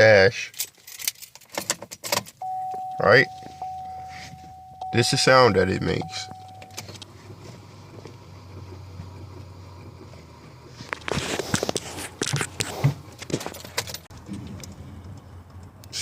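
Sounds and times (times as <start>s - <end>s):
car engine clicking and knocking: 4.4s - 16.0s.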